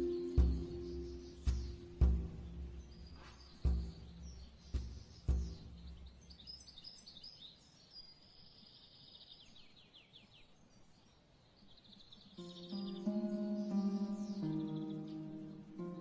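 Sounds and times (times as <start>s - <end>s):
plucked string music: 0.0s - 6.2s, 12.4s - 16.0s
faint birdsong: 0.0s - 16.0s
soft hiss: 0.0s - 16.0s.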